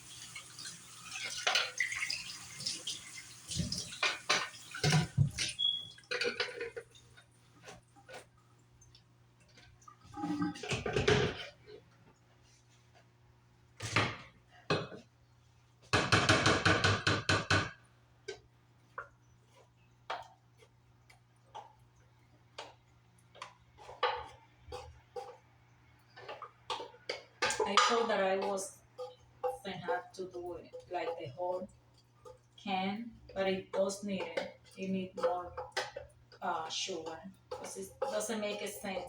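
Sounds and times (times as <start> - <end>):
utensils clinking against dishes: 3.8 - 6.8.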